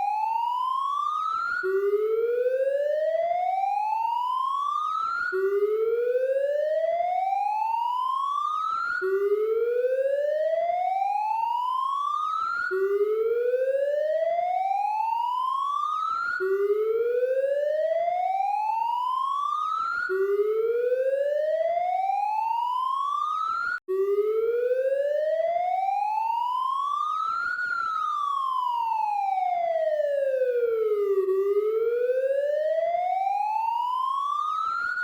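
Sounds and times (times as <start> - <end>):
police siren wailing: 0.0 - 35.0.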